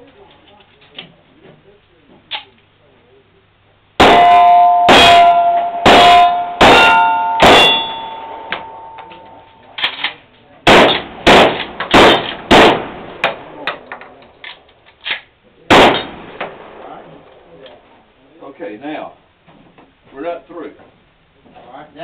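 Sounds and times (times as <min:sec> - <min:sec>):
pistol shots: 0:04.0 - 0:08.8, 0:10.6 - 0:13.8, 0:15.0 - 0:16.8
metallic ring of steel plate: 0:04.1 - 0:09.8.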